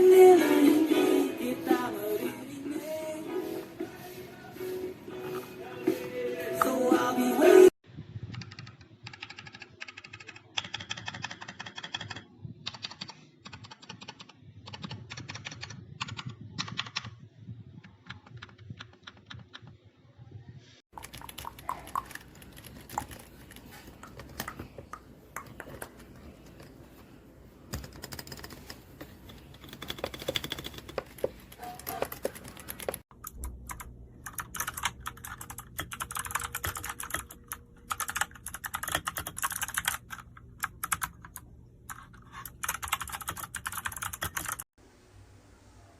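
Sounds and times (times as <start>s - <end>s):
mechanical keyboard typing: 8.3s - 17.2s, 21.0s - 24.6s, 27.7s - 44.7s.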